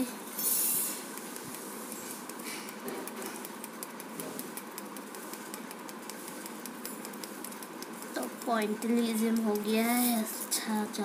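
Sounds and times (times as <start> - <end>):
marker pen tapping on paper: 1.1 - 9.8.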